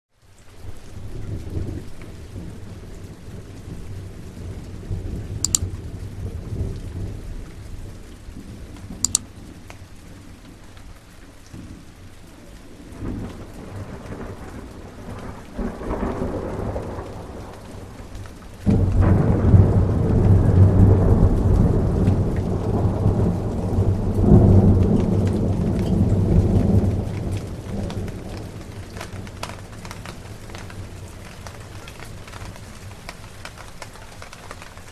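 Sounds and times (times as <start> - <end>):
rain on a window: 0.1 - 34.9
raindrop ticks: 5.3 - 7.1, 8.3 - 34.9
rolling thunder: 12.7 - 33.1.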